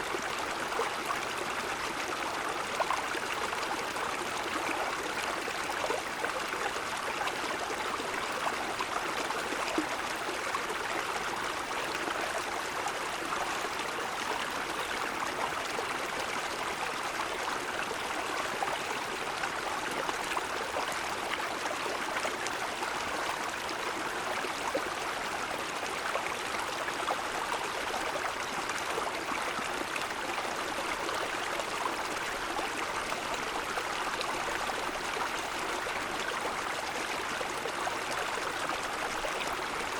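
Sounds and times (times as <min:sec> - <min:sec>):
stream flowing over stones: 0:00.0 - 0:39.9.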